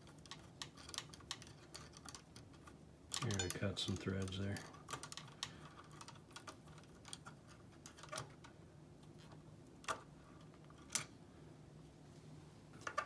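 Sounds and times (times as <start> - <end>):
small metallic clicks and taps: 0.0 - 8.3.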